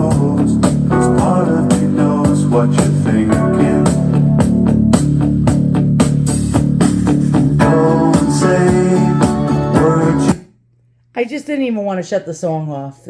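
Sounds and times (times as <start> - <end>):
guitar song through speaker: 0.0 - 10.5.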